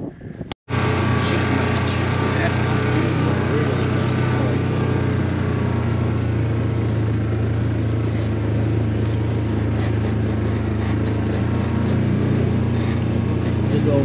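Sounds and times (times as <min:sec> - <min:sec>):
utility vehicle engine running: 0:00.7 - 0:14.0.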